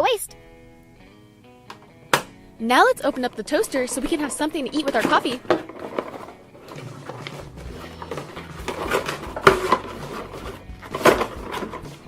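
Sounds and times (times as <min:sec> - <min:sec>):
cardboard and plastic rustling: 0:03.0 - 0:12.0.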